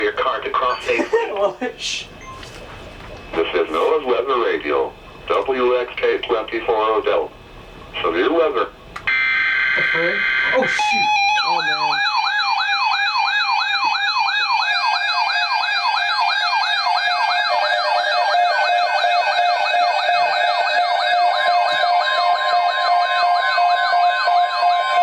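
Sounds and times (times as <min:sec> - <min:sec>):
electronic yelp siren wailing: 0:09.1 - 0:25.0
steady alert tones: 0:09.8 - 0:12.6.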